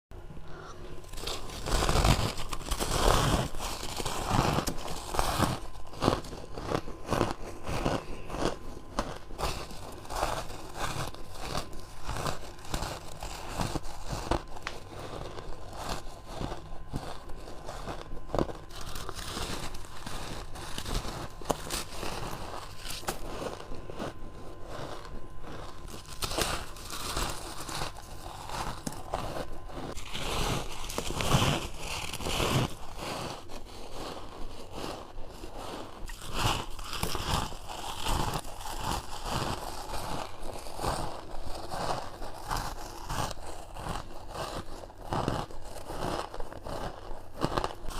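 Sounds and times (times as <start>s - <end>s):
person crunching ice: 0.5s - 47.9s.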